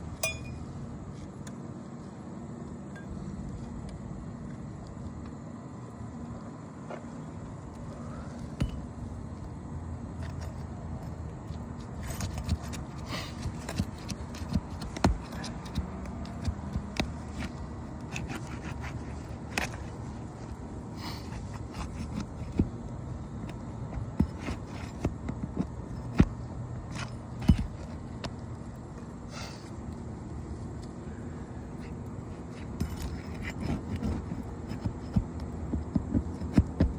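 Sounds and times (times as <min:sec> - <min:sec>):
roofing tool scraping and knocking: 0:11.8 - 0:20.2, 0:21.0 - 0:28.4, 0:31.8 - 0:36.9.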